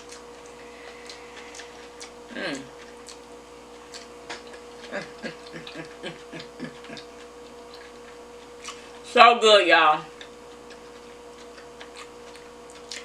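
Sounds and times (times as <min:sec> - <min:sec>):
woman chewing with mouth clicks: 0:00.0 - 0:09.0, 0:10.1 - 0:13.0
faint electrical hum: 0:00.0 - 0:13.0
woman humming mm: 0:02.3 - 0:02.8, 0:04.8 - 0:07.1.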